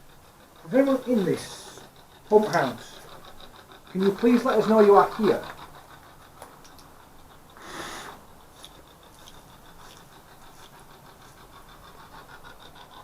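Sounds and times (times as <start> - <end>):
faint clicks: 6.3 - 7.6
breathy exhale: 7.6 - 8.3.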